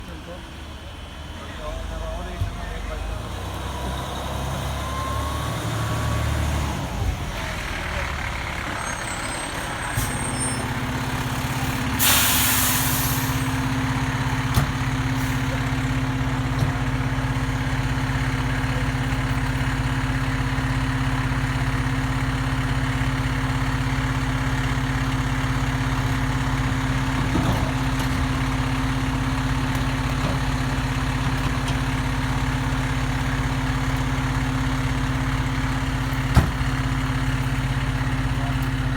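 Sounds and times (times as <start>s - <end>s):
diesel truck engine idling: 0.0s - 38.9s
air brakes hiss: 11.6s - 13.6s.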